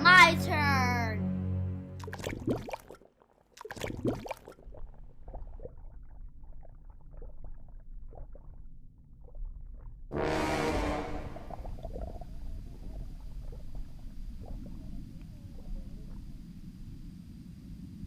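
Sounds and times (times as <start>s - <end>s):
water splash: 2.0s - 8.3s, 10.2s - 16.1s
low bubbling of water: 2.0s - 18.0s.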